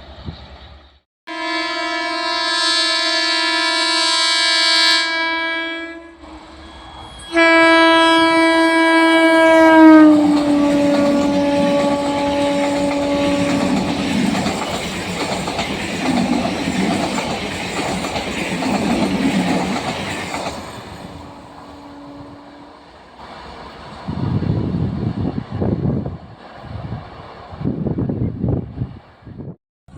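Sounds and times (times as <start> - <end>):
train horn blast: 1.3 - 14.2, 21.0 - 22.9
train wheels rumbling on track: 6.2 - 29.0.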